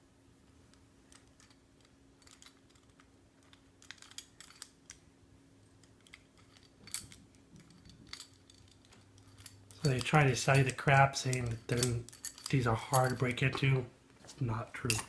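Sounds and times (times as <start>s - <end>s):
metallic clicks of lock picking tools: 1.1s - 5.0s, 5.8s - 13.6s.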